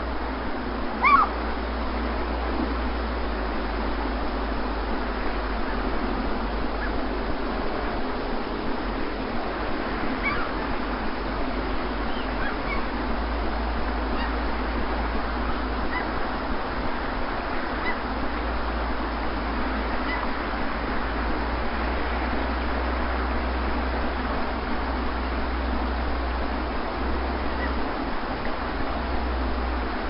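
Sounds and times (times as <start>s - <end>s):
low steady drone: 0.0s - 30.0s
sea surf: 0.0s - 30.0s
faint bird calls: 1.0s - 1.4s, 6.6s - 7.0s, 10.2s - 10.8s, 11.9s - 13.0s, 14.0s - 14.6s, 15.8s - 16.2s, 17.7s - 18.1s, 20.0s - 20.4s, 27.4s - 27.9s.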